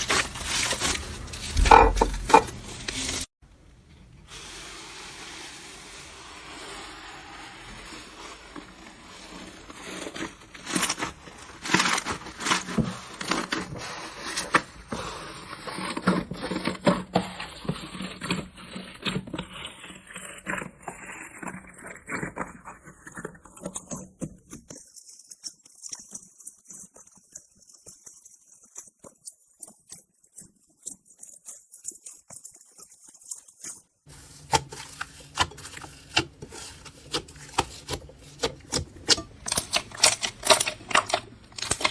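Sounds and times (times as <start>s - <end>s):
slime crackling and popping: 25.0s - 41.9s.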